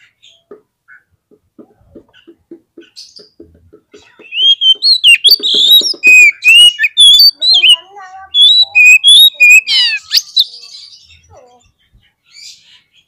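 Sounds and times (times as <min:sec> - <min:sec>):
bird singing whistled phrases: 0:04.3 - 0:10.6.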